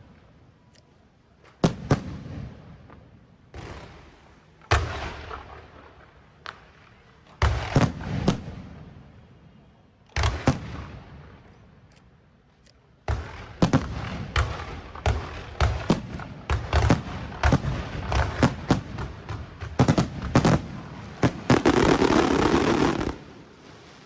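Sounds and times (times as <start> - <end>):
fireworks bangs: 1.4 - 9.2, 13.0 - 24.0
fireworks crackling: 13.1 - 24.0.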